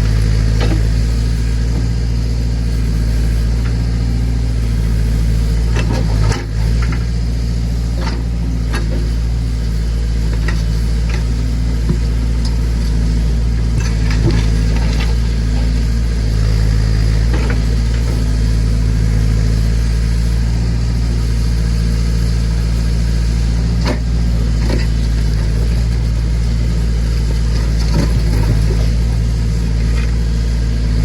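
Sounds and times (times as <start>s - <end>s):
backhoe engine running: 0.0s - 31.0s
digging knocks and clanks: 0.1s - 1.0s, 5.6s - 7.1s, 7.9s - 9.2s, 10.2s - 15.8s, 17.2s - 18.3s, 23.6s - 26.1s, 27.2s - 30.4s.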